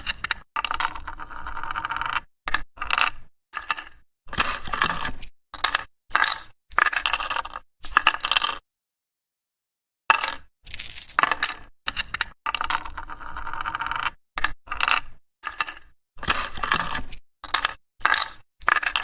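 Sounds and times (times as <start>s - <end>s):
coins dropping and clinking: 0.0s - 1.1s, 2.9s - 5.0s, 5.6s - 8.5s, 10.1s - 13.0s, 14.4s - 15.9s, 16.7s - 19.0s
metallic coin rattle: 5.6s - 8.3s, 10.1s - 13.0s, 14.8s - 15.9s, 16.7s - 19.0s.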